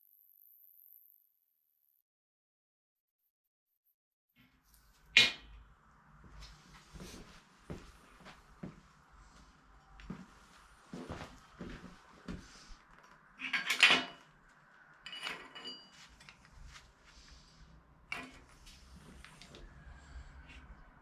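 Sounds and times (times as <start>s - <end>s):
metal scraping: 4.7s - 21.0s
metal objects clattering: 13.4s - 14.4s, 15.0s - 16.7s, 18.1s - 18.5s
metal clank ringing: 15.0s - 16.4s.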